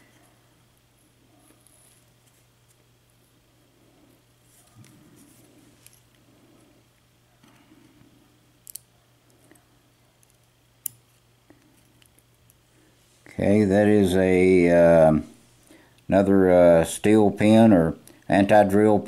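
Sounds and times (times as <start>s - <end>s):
faint handling noises: 0.0s - 13.4s
small metallic clicks: 8.6s - 8.9s.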